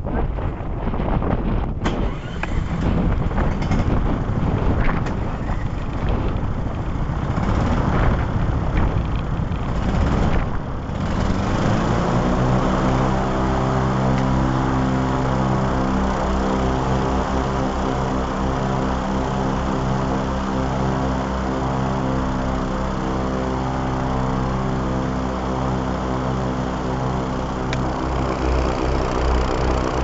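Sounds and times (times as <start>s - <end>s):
wind buffeting microphone: 0.0s - 13.3s
steady drone with overtones: 2.5s - 30.0s.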